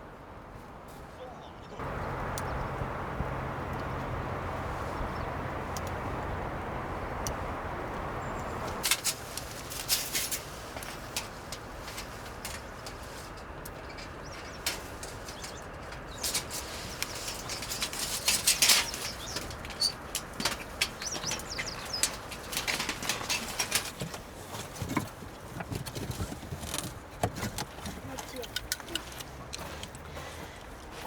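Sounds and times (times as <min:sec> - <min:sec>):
campfire crackling and popping: 0:01.8 - 0:23.5
high bird chirps: 0:18.7 - 0:20.1, 0:20.9 - 0:22.2.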